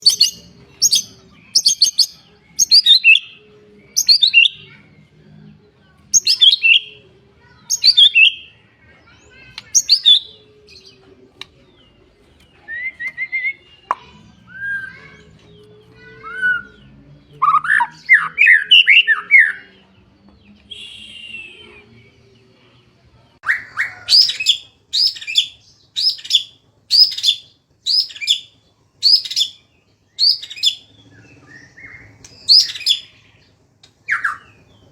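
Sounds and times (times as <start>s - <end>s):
songbird sharp high calls: 20.7s - 21.8s.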